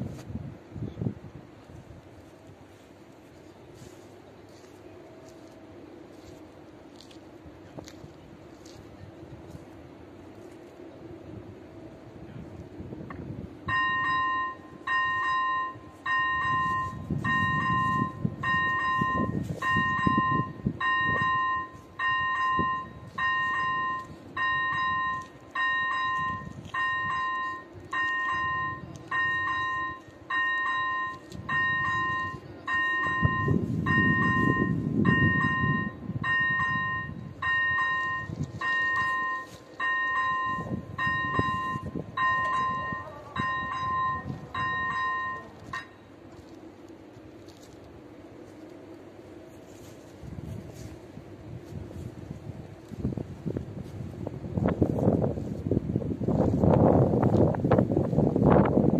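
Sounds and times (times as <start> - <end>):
level crossing bell dinging: 13.7 - 46.0.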